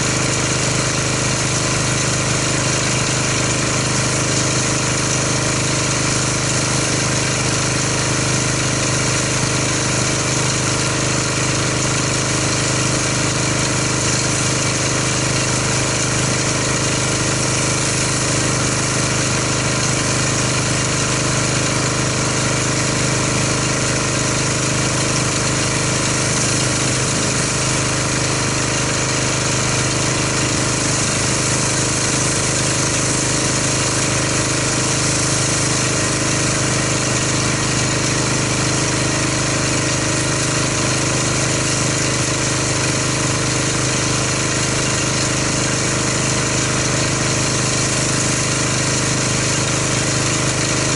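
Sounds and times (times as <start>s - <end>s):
pressure washer engine running: 0.0s - 50.9s
water spray hiss: 14.0s - 50.9s.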